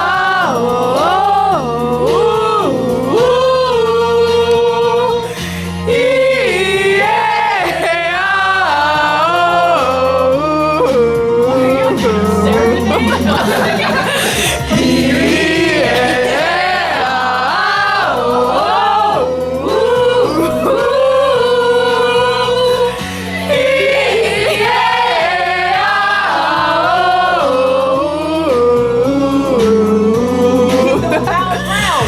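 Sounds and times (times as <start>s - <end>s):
musical accompaniment with low chords: 0.0s - 32.0s
voices singing together: 0.0s - 32.0s.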